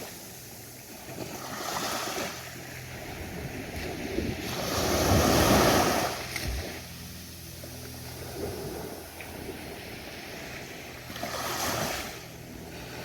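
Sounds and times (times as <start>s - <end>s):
ocean waves breaking on beach: 0.0s - 13.0s.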